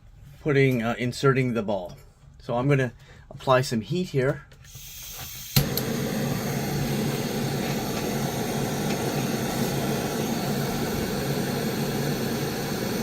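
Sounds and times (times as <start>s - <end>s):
heat gun blowing hum: 4.7s - 13.0s
heat gun switch click: 5.5s - 6.0s.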